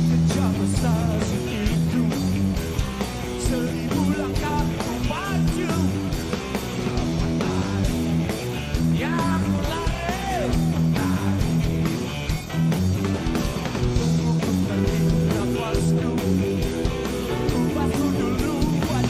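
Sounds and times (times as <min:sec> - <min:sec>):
rock song with guitar: 0:00.0 - 0:19.0
person singing: 0:03.4 - 0:06.0, 0:14.0 - 0:19.0.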